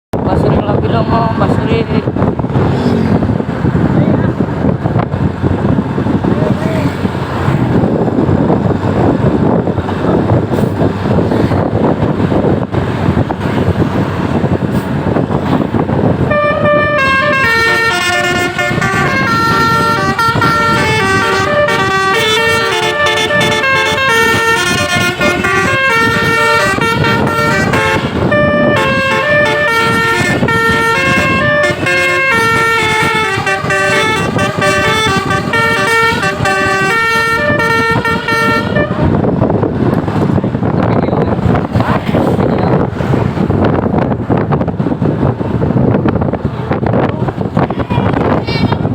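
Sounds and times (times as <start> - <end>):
loud rushing noise: 1.2 - 48.9
bus multi-tone air horn melody: 16.2 - 39.2.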